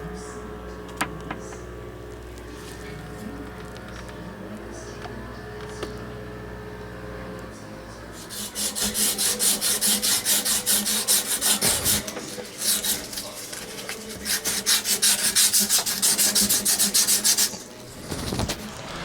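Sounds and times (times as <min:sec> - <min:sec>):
steady low hum: 0:00.0 - 0:19.0
sandpaper rubbing on copper pipe: 0:08.2 - 0:18.6.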